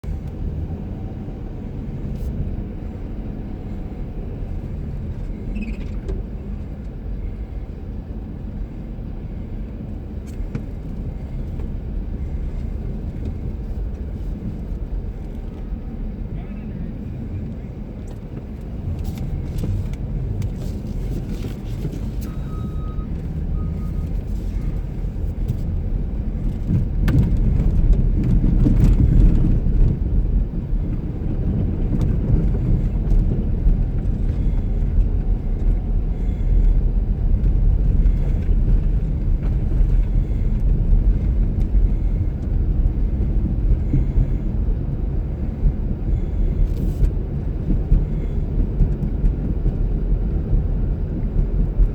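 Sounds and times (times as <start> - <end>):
wind buffeting microphone: 24.1 - 51.9.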